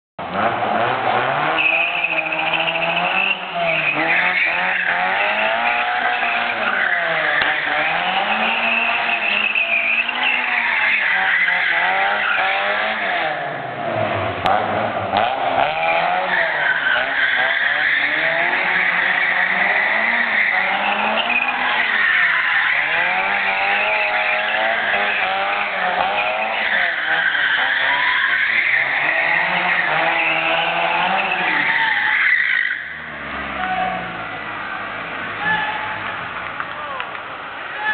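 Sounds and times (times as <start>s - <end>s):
car engine at high revs: 0.2s - 36.6s
tyres squealing: 1.4s - 13.2s, 16.0s - 34.2s.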